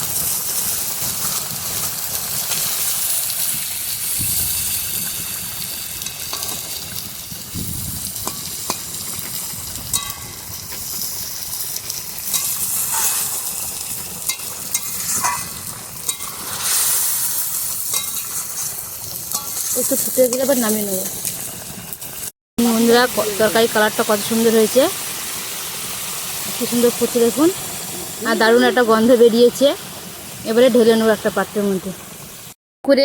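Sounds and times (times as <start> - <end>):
curry boiling and sizzling: 0.0 - 32.6
spatula clinking against pan: 14.3 - 16.4.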